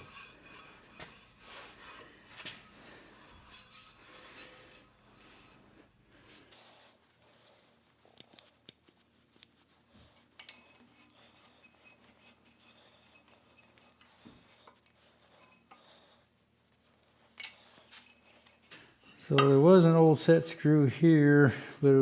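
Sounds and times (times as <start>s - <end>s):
metallic clicks of tools handled: 10.4s - 10.8s, 17.3s - 18.2s.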